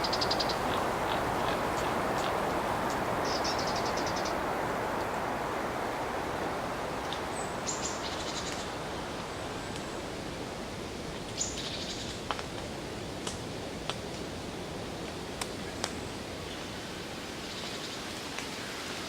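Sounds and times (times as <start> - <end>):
rapid high bird calls: 0.0 - 4.4
steady rush of forest ambience: 0.0 - 19.0.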